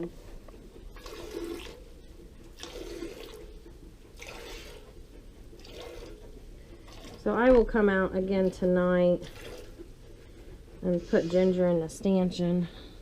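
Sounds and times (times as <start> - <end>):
milk squirting into a pail: 0.9 - 1.9, 2.5 - 3.6, 4.2 - 5.0, 5.6 - 7.4, 9.2 - 9.9.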